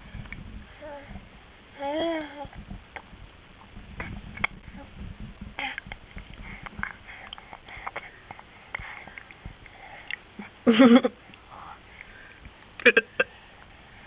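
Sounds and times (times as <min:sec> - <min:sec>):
wet chewing and lip smacks: 0:06.3 - 0:10.3.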